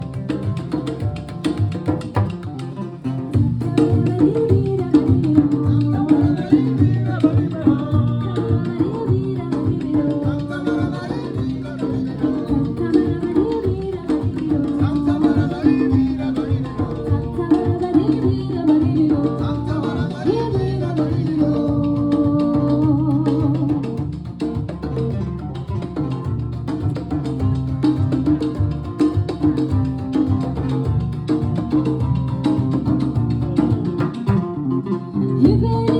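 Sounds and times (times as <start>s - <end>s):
drums and percussion: 0.0s - 34.7s, 35.3s - 35.9s.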